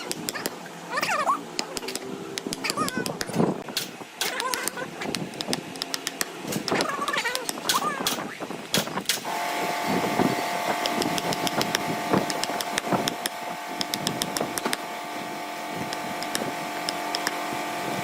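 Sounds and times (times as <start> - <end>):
power tool motor whining: 9.2 - 18.0.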